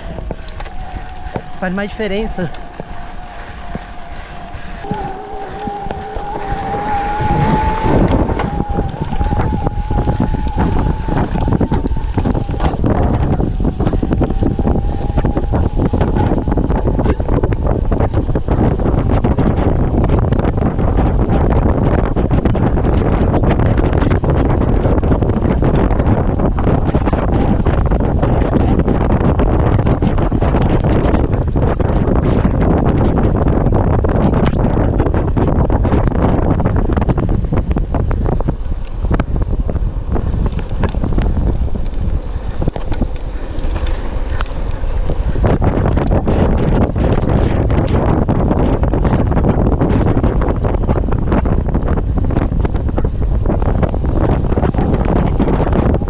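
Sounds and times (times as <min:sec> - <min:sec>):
bike tyres rumbling over ground: 0:00.0 - 0:56.0
wind buffeting microphone: 0:00.0 - 0:56.0
bike clicking and rattling: 0:34.4 - 0:56.0.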